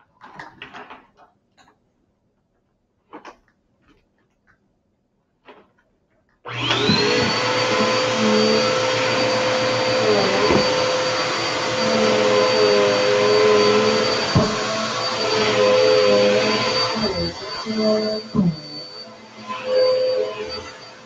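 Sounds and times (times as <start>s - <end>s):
vacuum cleaner motor whining: 6.5s - 21.0s.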